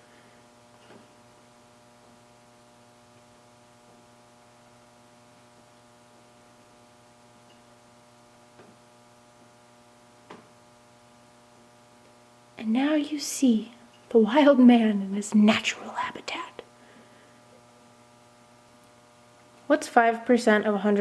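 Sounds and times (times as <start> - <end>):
faint electrical hum: 0.0 - 21.0.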